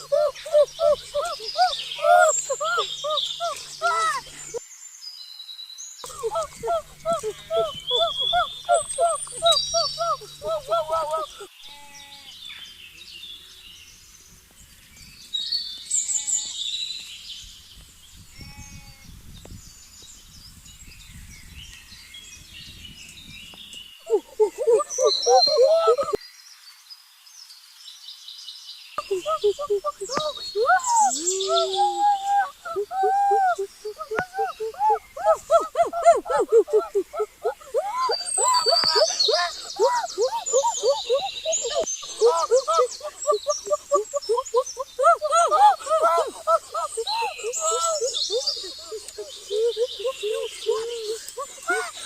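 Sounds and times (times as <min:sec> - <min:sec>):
birds chirping: 0:00.0 - 0:04.6, 0:06.0 - 0:13.0, 0:22.7 - 0:26.2, 0:29.0 - 0:52.0
person speaking: 0:00.0 - 0:04.6, 0:06.1 - 0:11.5, 0:24.1 - 0:26.2, 0:29.0 - 0:52.0
bleat-like animal call: 0:11.6 - 0:12.4, 0:18.4 - 0:19.1.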